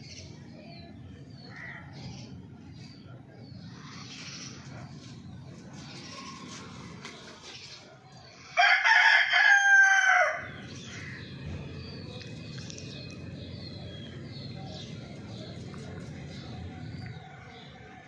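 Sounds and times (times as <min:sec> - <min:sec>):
rooster crowing: 0:08.6 - 0:10.6.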